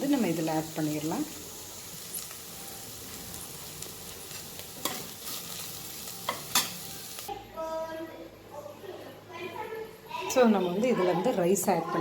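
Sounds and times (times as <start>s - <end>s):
vegetables sizzling in a pan: 0.0s - 7.3s.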